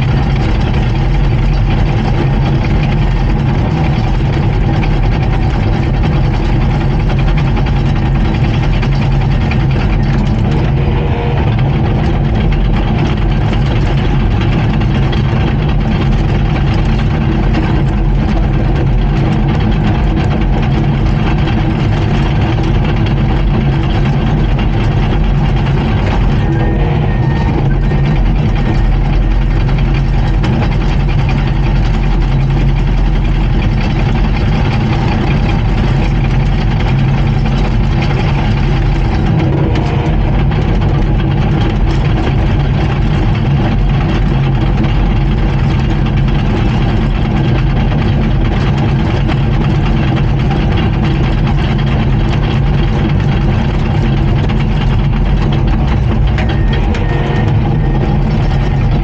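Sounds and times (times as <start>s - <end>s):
bulldozer diesel engine running: 0.0s - 59.0s.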